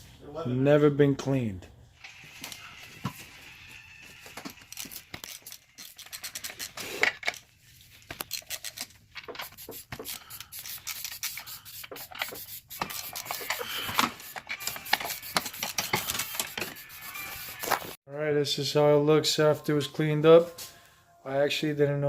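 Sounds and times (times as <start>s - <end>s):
rag scrubbing engine parts: 8.3s - 18.0s.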